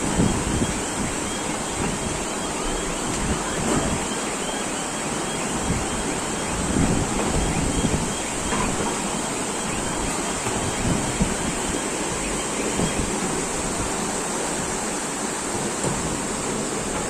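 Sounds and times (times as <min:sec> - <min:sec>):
wind buffeting microphone: 0:00.0 - 0:04.1, 0:05.4 - 0:14.9
wind roaring: 0:00.0 - 0:17.0.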